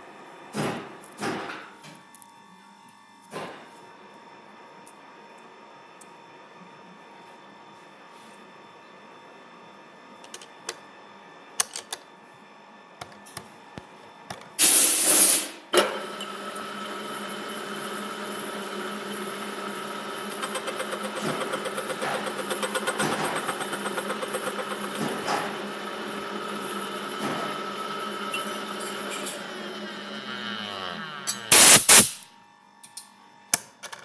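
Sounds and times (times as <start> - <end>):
milling machine humming and whining: 15.9 - 31.8
cutter pulsing on metal: 20.2 - 25.5, 28.2 - 32.1
loud hissing burst: 31.5 - 32.2.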